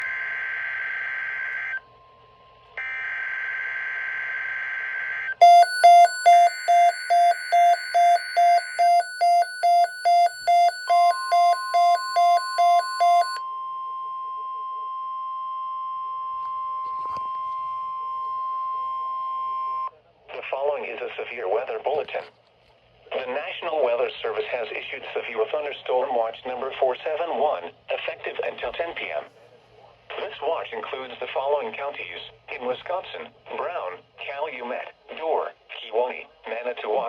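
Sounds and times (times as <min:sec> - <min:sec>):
radio receiver alarm beeps: 0:05.3 - 0:19.9
steady warning alarm tone: 0:05.4 - 0:13.4.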